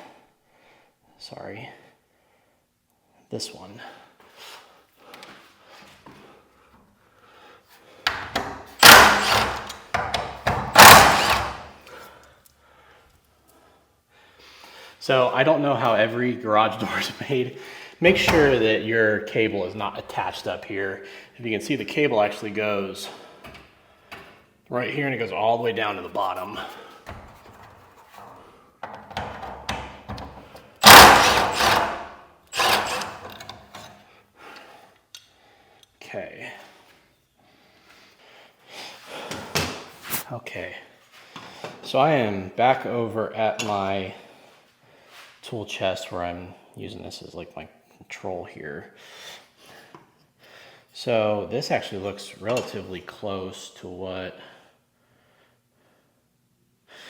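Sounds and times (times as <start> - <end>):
loud power tool bursts: 8.8 - 9.8, 10.5 - 11.8, 30.8 - 33.4.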